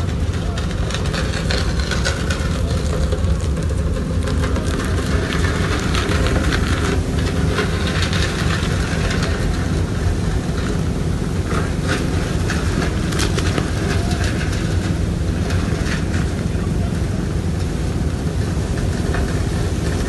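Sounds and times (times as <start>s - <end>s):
crackles: 0.0s - 20.0s
ship engine rumble: 0.0s - 20.0s.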